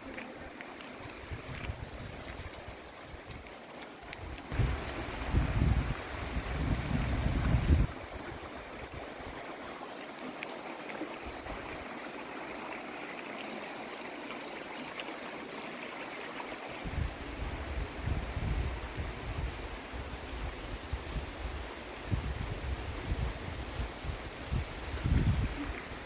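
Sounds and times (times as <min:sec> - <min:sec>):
creek water running: 0:00.0 - 0:26.0
wind buffeting microphone: 0:01.2 - 0:03.4, 0:04.2 - 0:09.2, 0:16.8 - 0:26.0.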